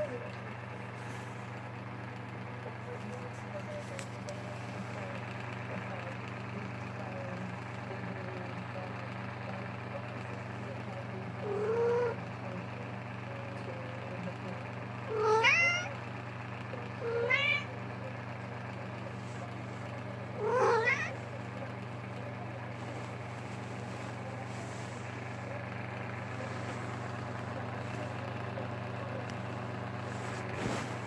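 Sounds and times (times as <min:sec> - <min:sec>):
steady low hum: 0:00.0 - 0:31.0
cat meowing: 0:11.4 - 0:12.2, 0:15.1 - 0:16.0, 0:17.0 - 0:17.7, 0:20.4 - 0:21.2.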